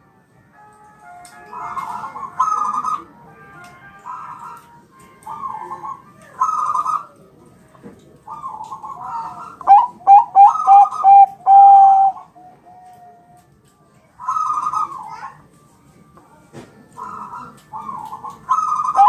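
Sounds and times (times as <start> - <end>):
dove cooing: 1.5 - 3.2, 5.3 - 7.2, 8.3 - 13.2, 14.2 - 15.4, 17.0 - 19.0.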